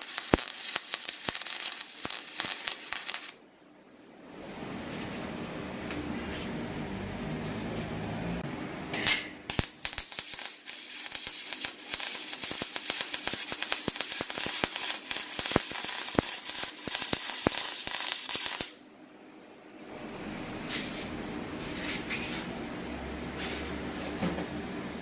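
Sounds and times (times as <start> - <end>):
welding arc crackling and hissing: 0.0 - 3.4, 9.0 - 18.8.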